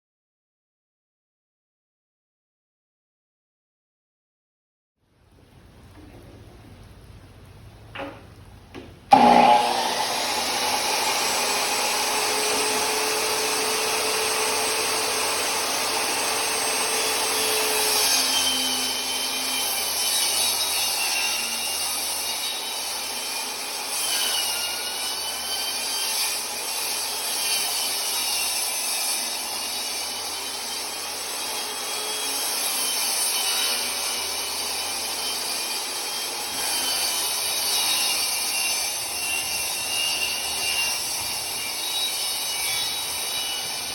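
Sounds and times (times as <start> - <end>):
power tool cutting wood: 8.8 - 43.9.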